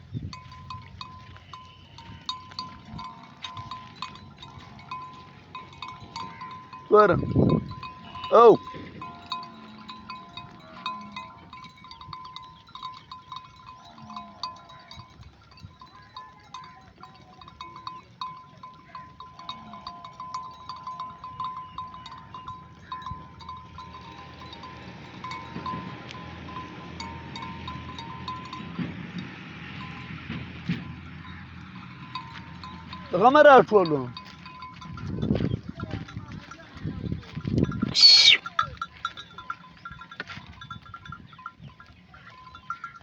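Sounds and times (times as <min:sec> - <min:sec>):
sheep bells clanking: 0:00.0 - 0:43.0
sheep bleating: 0:37.9 - 0:38.6.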